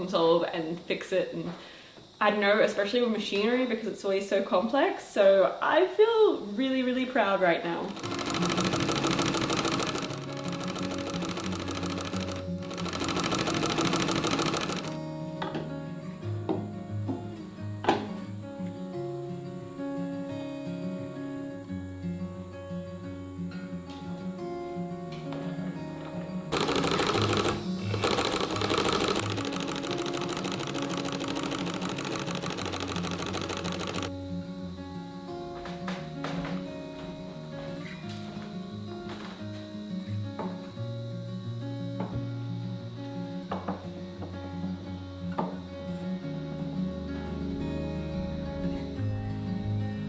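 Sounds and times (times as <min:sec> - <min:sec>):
sewing machine stitching: 0:07.8 - 0:15.0, 0:26.5 - 0:34.1
background music: 0:07.9 - 0:39.2, 0:45.8 - 0:50.0.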